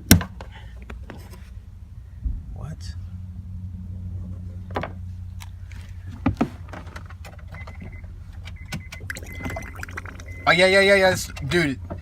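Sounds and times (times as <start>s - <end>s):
electric fuel pump humming: 8.6s - 10.7s.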